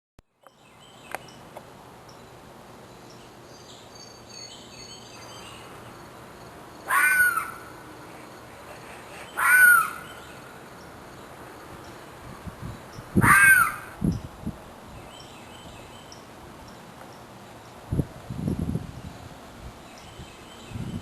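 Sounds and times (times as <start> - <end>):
faint woodland background: 0.2 - 21.0
loud animal calls: 6.9 - 7.7, 9.0 - 10.2, 13.2 - 14.0.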